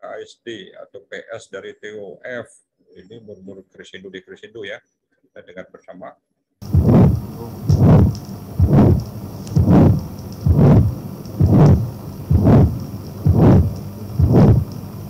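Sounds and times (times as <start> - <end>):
heartbeat with whooshing murmur: 6.6 - 15.0.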